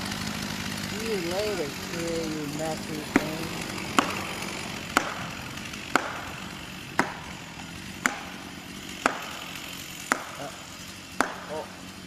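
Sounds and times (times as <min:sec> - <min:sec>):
hammer striking metal wedge: 0:05.0 - 0:05.2, 0:05.9 - 0:06.3, 0:10.1 - 0:10.4.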